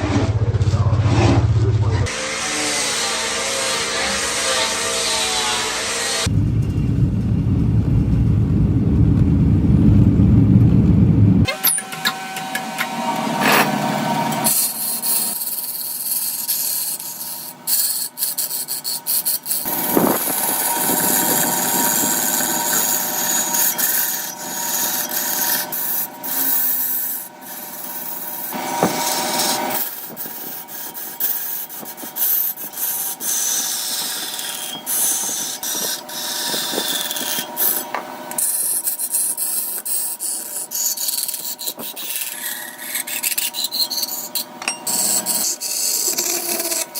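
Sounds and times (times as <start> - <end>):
tool rasping wood: 2.0 - 6.3, 11.5 - 46.9.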